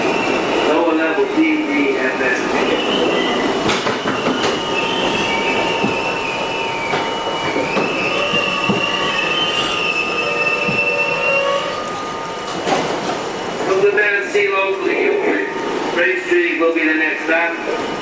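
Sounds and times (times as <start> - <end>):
subway wheels rumbling on track: 0.0 - 18.0
high wavering squeal: 4.2 - 12.4.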